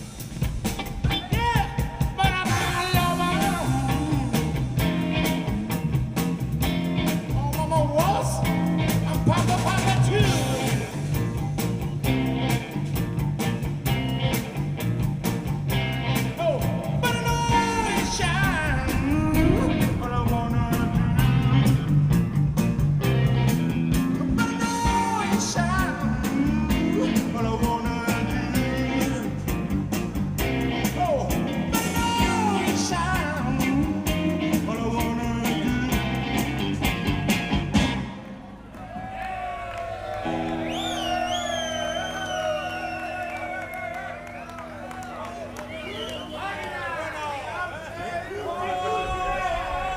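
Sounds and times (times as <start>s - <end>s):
steady drum beat: 0.0s - 38.0s
electric guitar: 0.0s - 46.2s
person singing: 1.1s - 4.8s, 16.5s - 22.0s, 24.2s - 29.5s, 31.0s - 36.6s.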